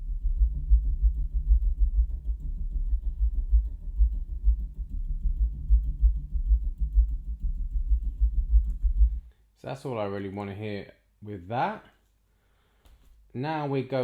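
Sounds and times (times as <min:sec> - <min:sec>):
bass-heavy music: 0:00.0 - 0:09.3.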